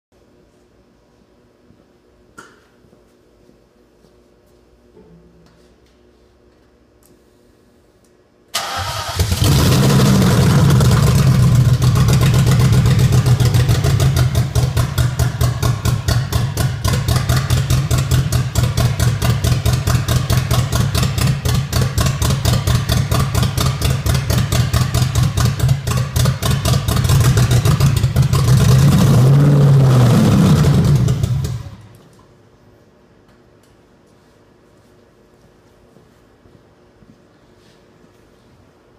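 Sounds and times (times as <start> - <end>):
car engine starting and idling: 8.5 - 32.0
engine revving: 8.6 - 31.9.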